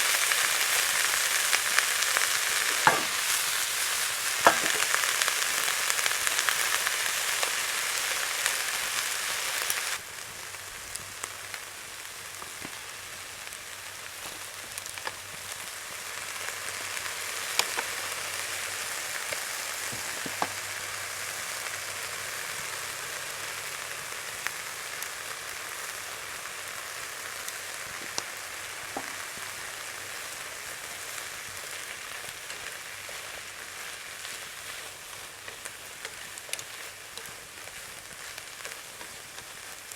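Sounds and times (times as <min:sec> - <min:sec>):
food sizzling in a pan: 0:00.0 - 0:39.9
sharp pops: 0:02.7 - 0:03.4, 0:04.4 - 0:04.9.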